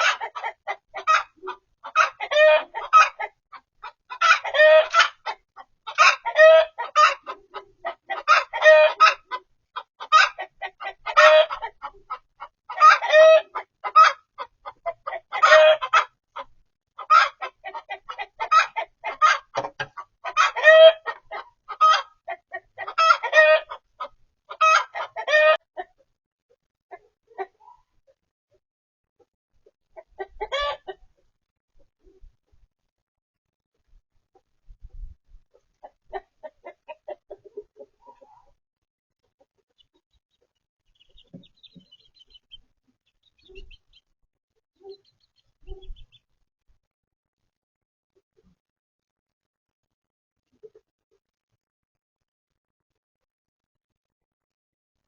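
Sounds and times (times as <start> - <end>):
chicken clucking loudly: 0.0 - 26.1, 26.9 - 28.1, 29.9 - 31.3, 35.5 - 38.6, 39.3 - 44.0, 44.8 - 46.2.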